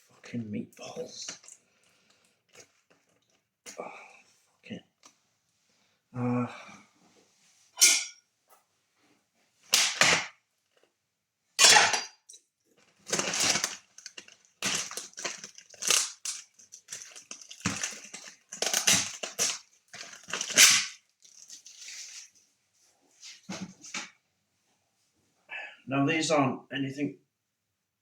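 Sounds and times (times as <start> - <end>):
plastic packaging crinkling: 12.8 - 22.4.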